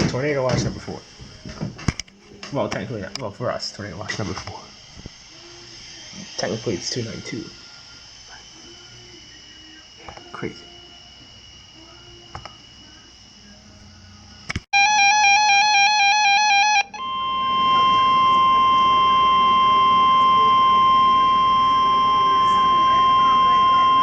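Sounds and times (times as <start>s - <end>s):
steady warning alarm tone: 14.8s - 24.0s
radio static: 17.0s - 24.0s.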